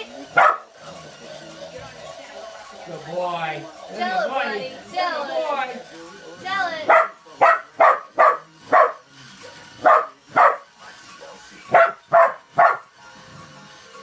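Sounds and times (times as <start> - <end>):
dog barking: 0.4 - 0.7, 6.9 - 9.0, 9.8 - 10.6, 11.7 - 12.9.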